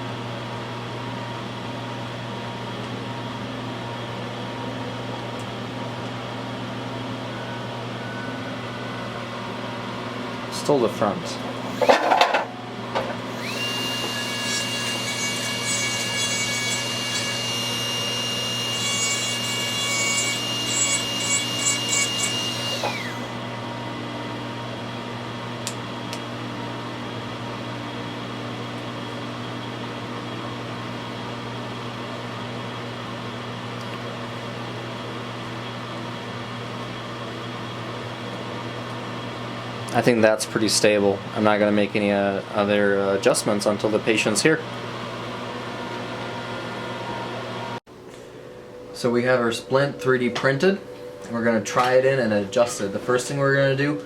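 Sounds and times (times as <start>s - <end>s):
rotary handpiece whine: 11.6s - 23.5s.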